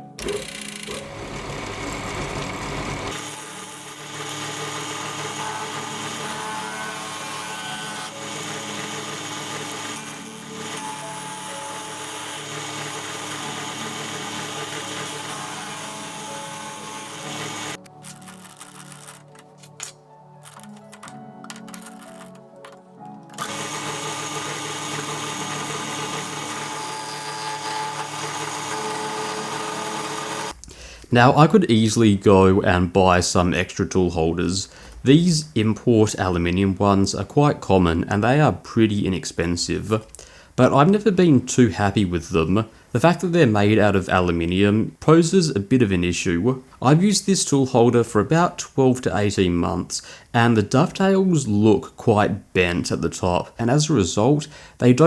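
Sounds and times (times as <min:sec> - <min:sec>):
electric motor whining: 0:00.2 - 0:19.4, 0:23.3 - 0:30.6.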